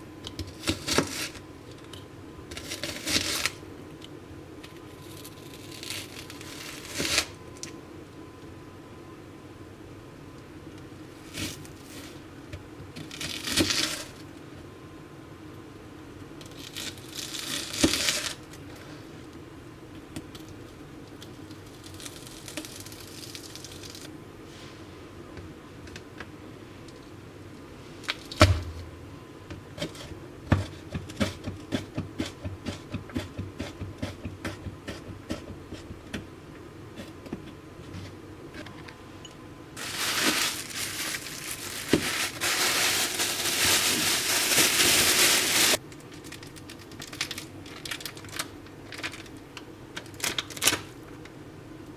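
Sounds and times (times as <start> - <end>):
rustling crinkling: 39.8 - 49.4.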